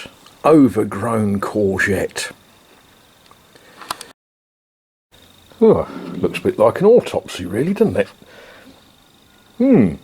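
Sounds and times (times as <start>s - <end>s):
faint background hiss: 0.0s - 4.1s, 5.2s - 10.0s
sharp click: 3.3s - 4.2s.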